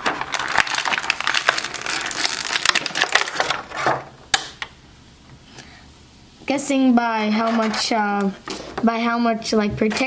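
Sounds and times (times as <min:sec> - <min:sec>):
plastic packaging crackling: 0:00.0 - 0:04.0.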